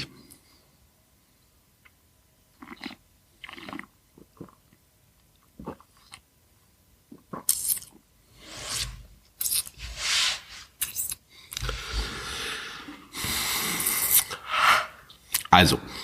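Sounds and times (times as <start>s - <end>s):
person slurping a drink: 2.6s - 4.6s, 11.6s - 15.1s.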